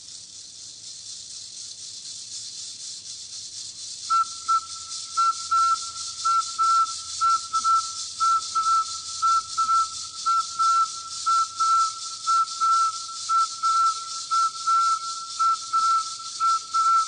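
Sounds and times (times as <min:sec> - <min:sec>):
pulsing high insect buzz: 0:00.0 - 0:17.0
repeated whistled note: 0:04.1 - 0:17.0.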